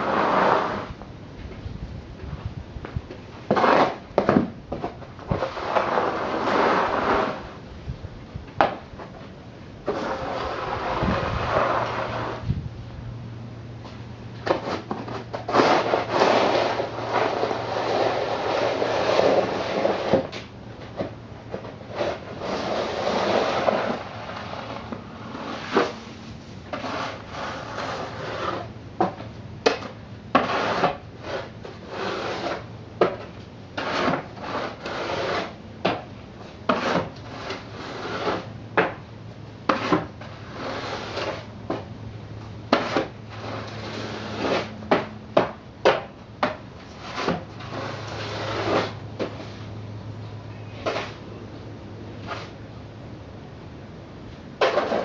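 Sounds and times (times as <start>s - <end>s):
snow shovel scraping snow: 0.0s - 1.0s, 3.5s - 4.5s, 5.2s - 7.6s, 9.8s - 12.5s, 14.4s - 20.4s, 21.0s - 29.2s, 30.3s - 36.0s, 36.7s - 38.9s, 39.7s - 41.5s, 42.7s - 45.1s, 46.9s - 49.7s, 50.8s - 51.3s, 54.6s - 55.0s.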